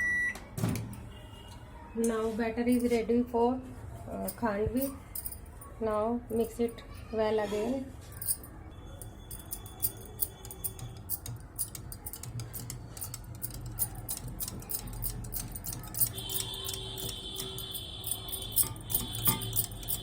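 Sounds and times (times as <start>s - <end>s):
spoon clicking against bowl: 9.6s - 20.0s
spoon stirring batter: 10.1s - 20.0s.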